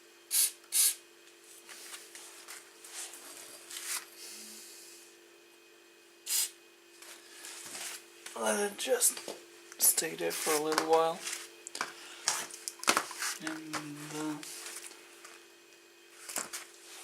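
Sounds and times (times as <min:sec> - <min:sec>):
aerosol spray can hissing: 0:00.3 - 0:01.0, 0:06.2 - 0:06.6.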